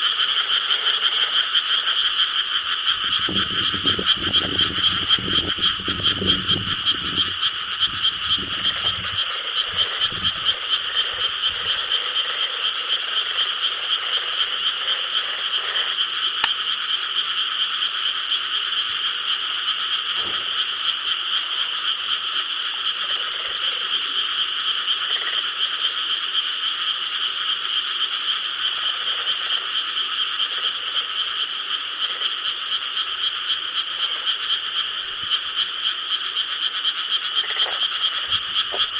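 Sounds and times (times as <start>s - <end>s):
deep frog croaks: 0.0s - 38.9s
frogs trilling in chorus: 0.0s - 38.9s.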